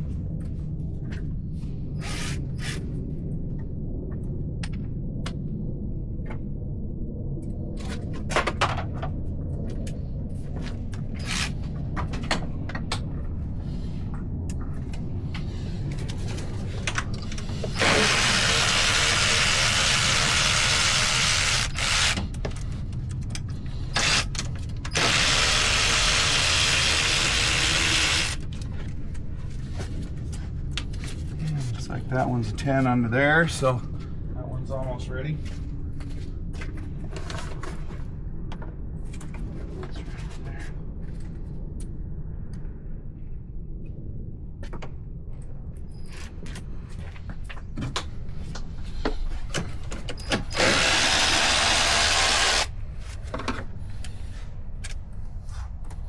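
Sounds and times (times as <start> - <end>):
power tool driving bolts: 11.2 - 11.6, 17.3 - 22.3, 24.0 - 28.4, 50.3 - 52.7.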